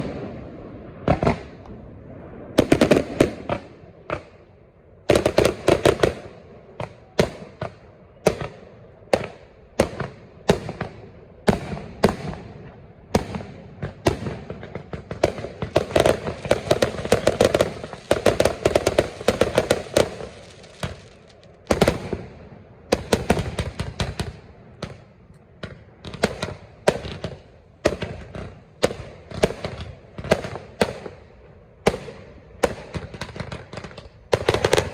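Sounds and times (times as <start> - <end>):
rapid firework crackling: 13.2 - 25.0, 31.9 - 34.9.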